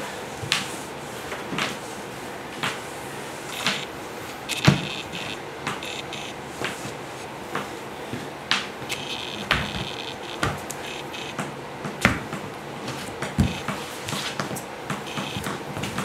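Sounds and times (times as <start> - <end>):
short high squeaks: 3.5 - 6.4, 8.8 - 11.4
body percussion slaps and stomps: 8.5 - 12.4.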